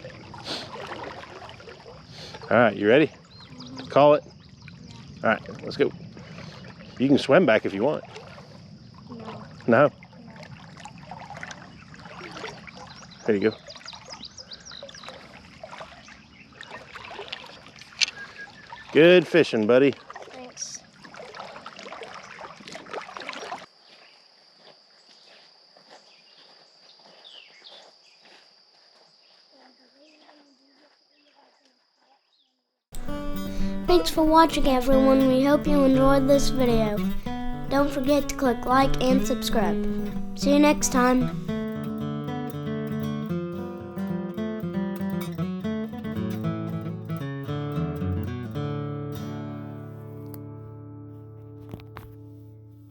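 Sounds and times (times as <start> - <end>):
short insect chirps: 17.8 - 19.0
acoustic guitar: 33.0 - 52.9.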